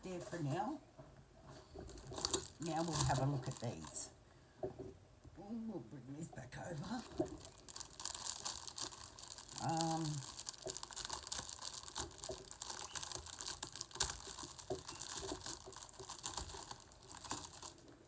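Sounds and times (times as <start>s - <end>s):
plastic and paper crinkling: 1.5s - 4.1s, 6.6s - 18.0s.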